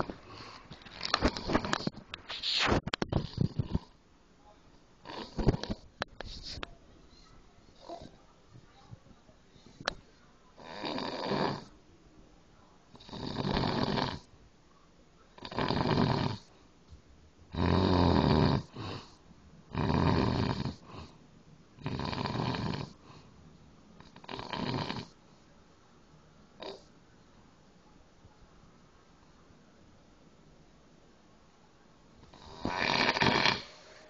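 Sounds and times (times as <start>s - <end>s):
man snoring loudly: 13.0s - 14.2s, 15.4s - 16.4s, 17.6s - 18.7s, 19.7s - 20.8s, 21.8s - 23.0s, 32.3s - 33.8s.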